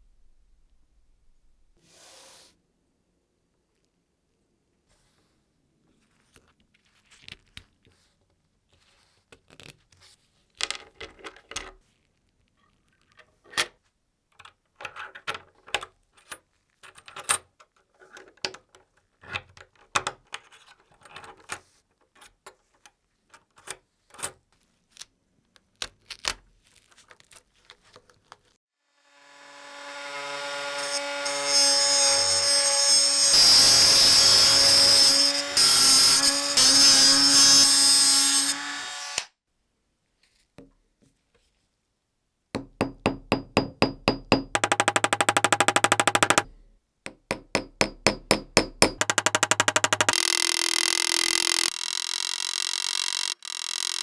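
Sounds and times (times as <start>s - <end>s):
small electric power tool running: 29.1s - 39.3s, 47.8s - 54.0s.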